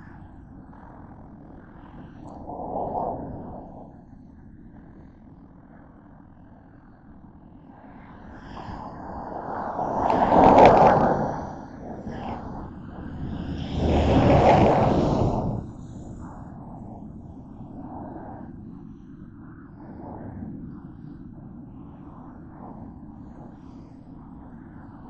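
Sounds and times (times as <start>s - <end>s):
vehicle passing with hissing whoosh: 9.8s - 16.2s
traffic rumble on wet road: 13.1s - 15.5s.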